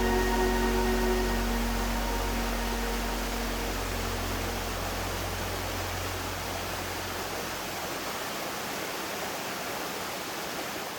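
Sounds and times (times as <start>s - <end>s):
background music: 0.0s - 6.7s
mountain stream rushing: 0.0s - 10.9s.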